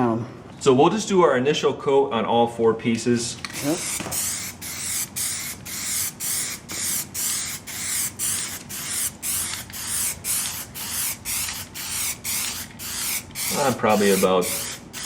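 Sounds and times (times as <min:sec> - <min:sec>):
aerosol can spraying in bursts: 0:03.5 - 0:15.0.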